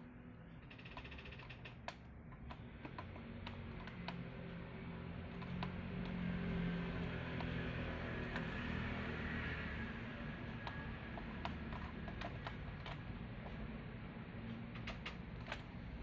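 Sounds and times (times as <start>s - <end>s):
light clicks and taps: 0.7s - 8.8s
steady low hum: 1.8s - 16.0s.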